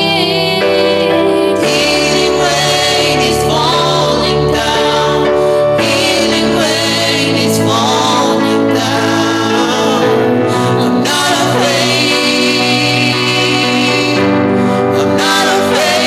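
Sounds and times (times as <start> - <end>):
gospel singing: 0.0 - 16.0
sustained instrumental chords: 0.0 - 16.0.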